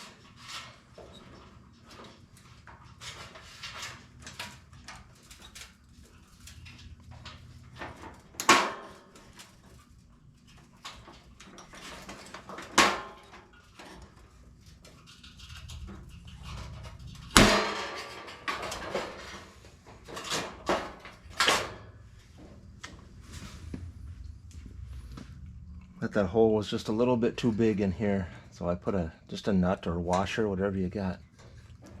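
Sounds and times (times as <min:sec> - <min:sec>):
loud sharp impacts: 0:15.8 - 0:19.4.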